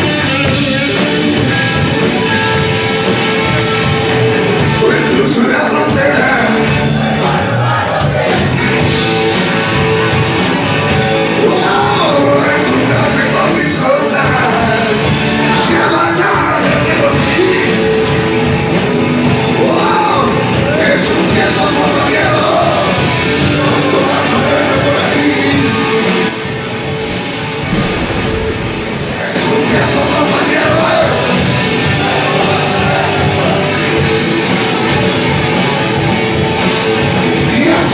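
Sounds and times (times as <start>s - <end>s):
rock music with electric guitar: 0.0s - 37.9s
person singing: 4.6s - 8.6s, 11.2s - 18.2s, 19.5s - 26.2s, 29.0s - 34.5s, 37.4s - 37.9s.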